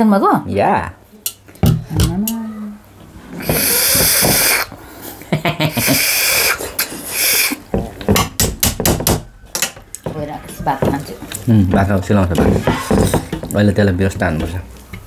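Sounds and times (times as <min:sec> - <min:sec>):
person slurping: 0:03.3 - 0:04.8, 0:05.7 - 0:07.7
eating clicks: 0:03.4 - 0:04.7, 0:05.8 - 0:07.6.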